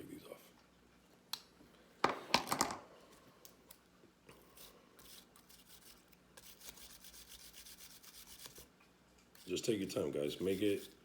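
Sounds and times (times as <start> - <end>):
rubbing and scratching strokes: 4.4 - 8.7, 9.3 - 11.0.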